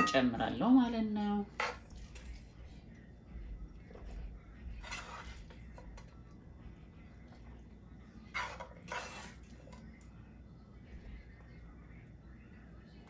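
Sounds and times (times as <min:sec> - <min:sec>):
utensil scraping a dish: 0:04.7 - 0:06.1, 0:08.2 - 0:09.8.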